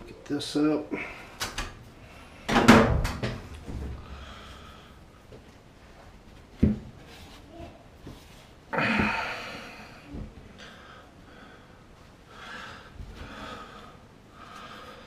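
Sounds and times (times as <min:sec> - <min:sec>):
man breathing: 0:00.9 - 0:02.5, 0:03.7 - 0:05.4, 0:08.7 - 0:15.0.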